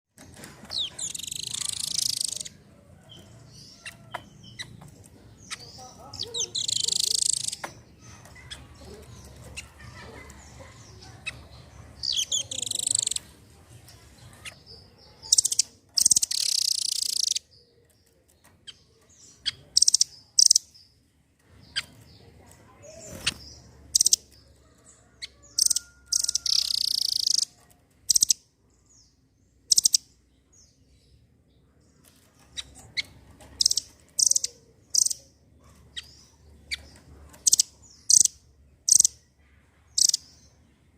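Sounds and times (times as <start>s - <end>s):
nuthatch calling: 0.7s - 2.6s, 5.4s - 9.7s, 10.3s - 13.2s, 14.4s - 17.5s, 18.7s - 20.7s, 22.9s - 28.4s, 29.7s - 30.1s, 32.6s - 39.2s, 39.9s - 40.4s.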